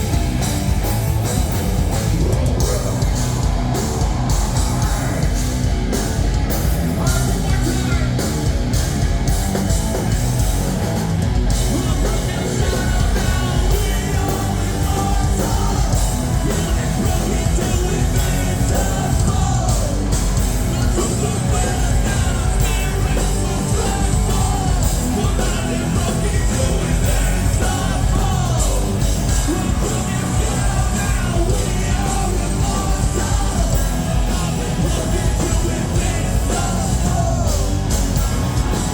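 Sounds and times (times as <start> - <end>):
hard rock band playing live: 0.0 - 38.9
person yelling and singing: 2.2 - 5.4, 6.8 - 8.8, 11.7 - 38.3.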